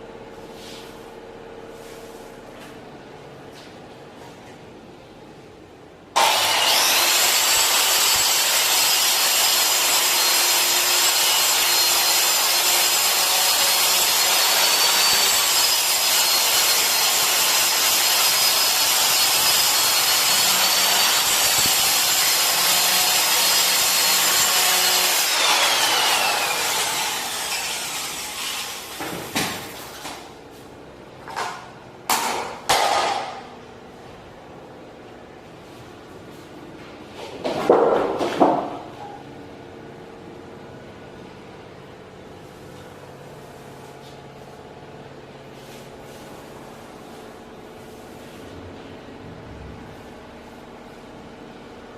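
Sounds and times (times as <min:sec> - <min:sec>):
electric cutter whining and grinding: 0:06.2 - 0:29.2.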